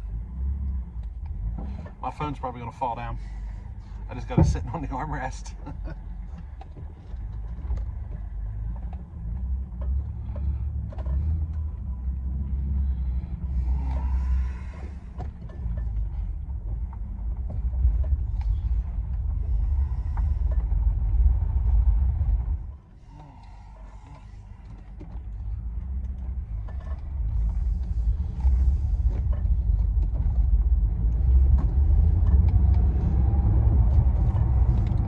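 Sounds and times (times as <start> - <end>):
engine and road rumble in cab: 0.0 - 35.0.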